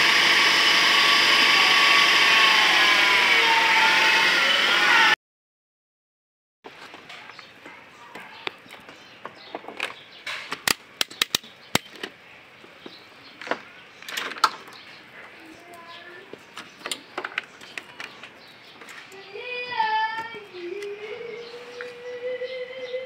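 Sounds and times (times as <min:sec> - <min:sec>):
sharp clicks and knocks: 0:08.7 - 0:12.2.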